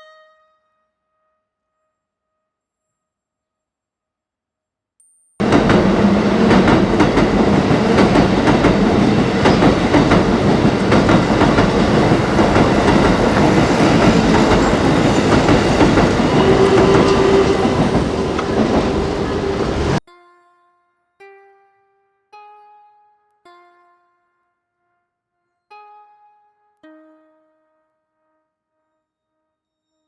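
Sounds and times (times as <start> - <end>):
train rumble and wheel clatter: 5.4 - 20.0.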